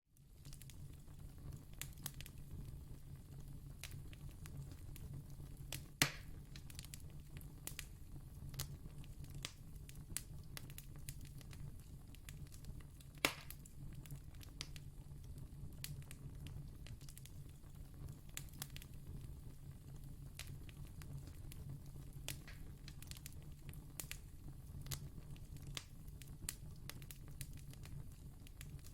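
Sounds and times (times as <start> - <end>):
fire crackling and popping: 0.2 - 28.9
fire snapping loudly: 5.7 - 7.9, 8.5 - 14.8.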